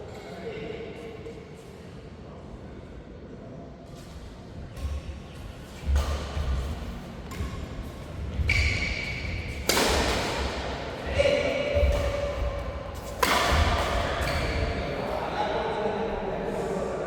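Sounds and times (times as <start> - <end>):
racket striking shuttlecock: 5.8 - 14.7.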